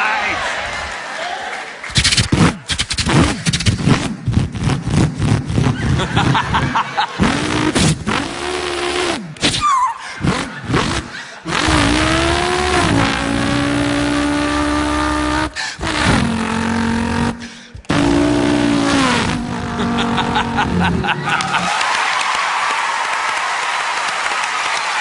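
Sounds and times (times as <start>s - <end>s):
man imitating car engine: 2.6s - 21.7s.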